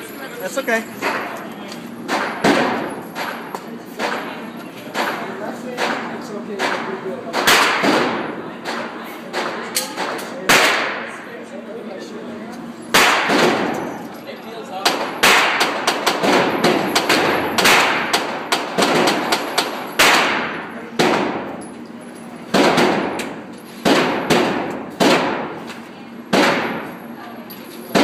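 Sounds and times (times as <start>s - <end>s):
gunshots with echo: 20.0s - 21.4s.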